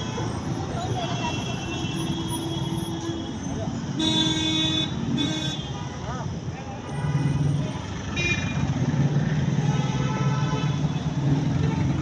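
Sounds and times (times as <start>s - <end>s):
vehicle horns: 1.0s - 5.9s, 9.6s - 12.0s
car and motorcycle engines passing: 7.3s - 10.0s, 10.6s - 12.0s.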